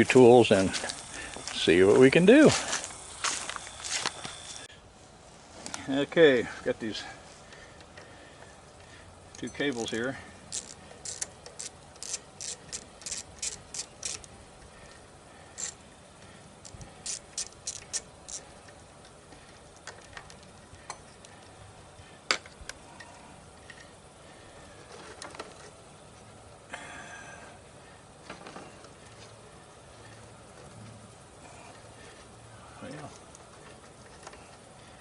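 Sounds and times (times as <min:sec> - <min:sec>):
hand tools clicking: 0:09.4 - 0:14.4, 0:15.5 - 0:15.8, 0:16.6 - 0:18.4.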